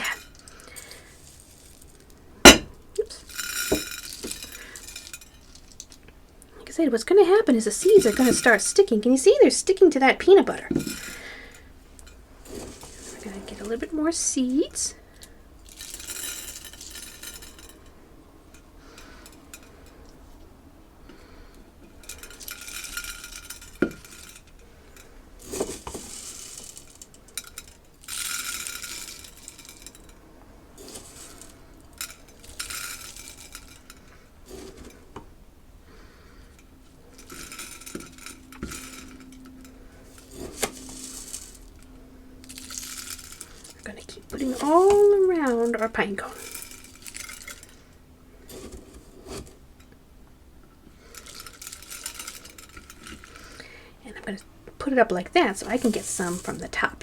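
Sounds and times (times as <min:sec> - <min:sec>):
birdseed rattling: 0:00.0 - 0:02.2, 0:03.0 - 0:06.1, 0:07.4 - 0:09.2, 0:10.8 - 0:19.8, 0:21.2 - 0:35.0, 0:35.9 - 0:47.9, 0:50.9 - 0:54.4, 0:55.1 - 0:57.0
spoon clinking container: 0:02.5 - 0:05.9, 0:07.8 - 0:08.8, 0:37.2 - 0:43.8.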